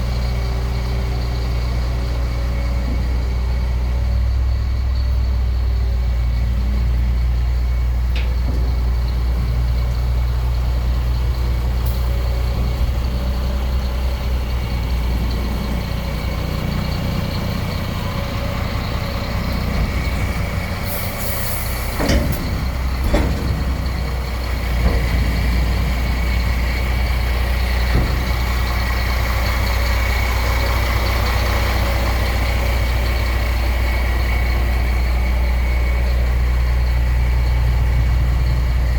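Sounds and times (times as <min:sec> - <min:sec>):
diesel truck engine running: 0:00.0 - 0:38.9
air brake hiss: 0:20.8 - 0:22.0.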